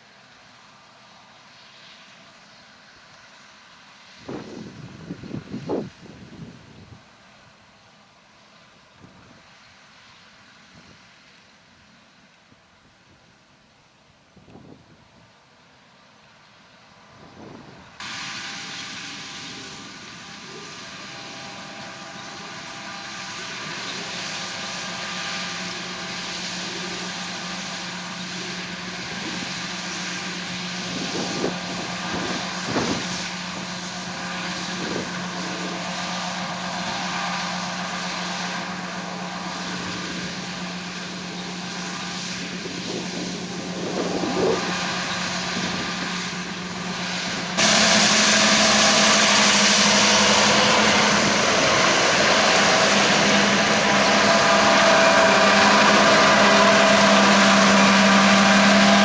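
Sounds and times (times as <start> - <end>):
combine harvester engine: 16.8 - 59.0.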